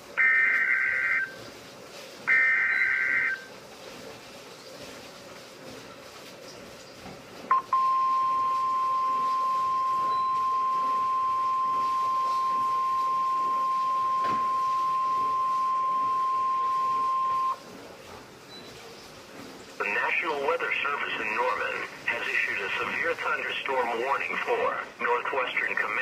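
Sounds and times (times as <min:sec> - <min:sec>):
steady high-pitched alarm beep: 0:00.2 - 0:01.4, 0:02.3 - 0:03.5, 0:07.5 - 0:17.6.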